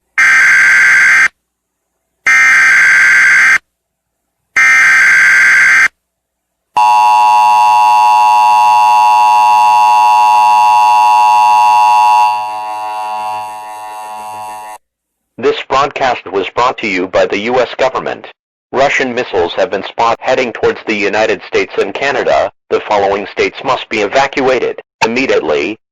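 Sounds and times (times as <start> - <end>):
two-tone attention signal: 6.8 - 14.8
buzzing digital data tones: 7.4 - 14.8.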